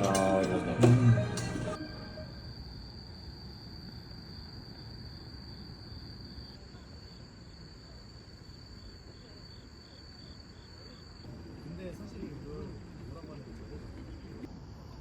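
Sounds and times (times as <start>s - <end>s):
burst of music: 0.0s - 2.4s
insects trilling: 1.8s - 15.0s.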